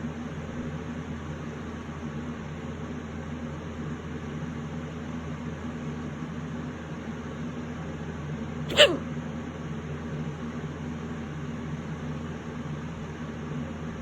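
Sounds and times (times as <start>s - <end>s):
low background hum: 8.7s - 9.0s
person hiccuping: 8.7s - 9.0s.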